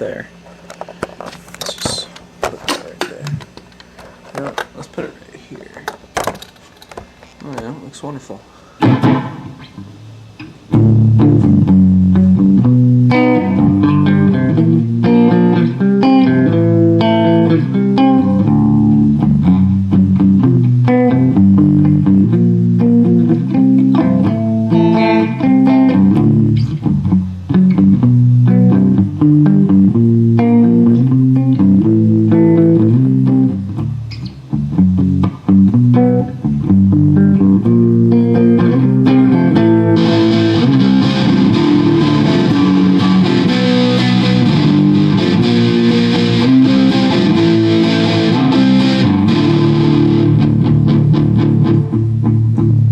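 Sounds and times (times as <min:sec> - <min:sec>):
guitar music: 0:08.8 - 0:52.9
plucked bass line: 0:10.7 - 0:52.9.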